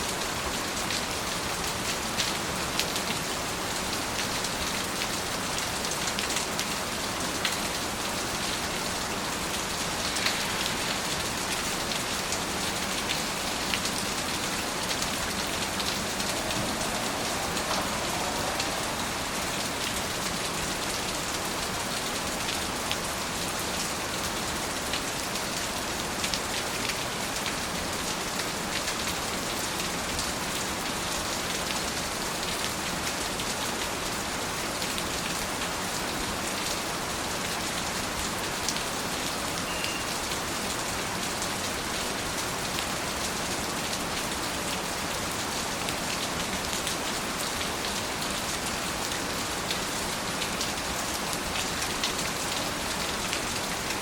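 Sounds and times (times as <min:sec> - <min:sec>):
rain falling on a surface: 0:00.0 - 0:54.0.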